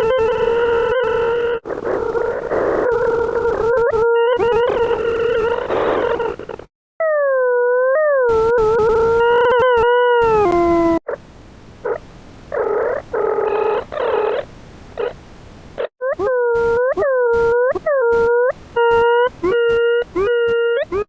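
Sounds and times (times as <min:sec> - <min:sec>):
buzzy tone blips: 0:00.0 - 0:06.6, 0:15.8 - 0:21.0.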